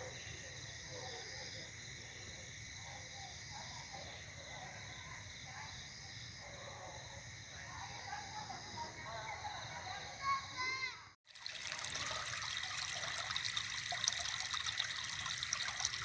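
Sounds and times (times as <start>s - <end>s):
crickets and insects trilling: 11.4s - 16.0s.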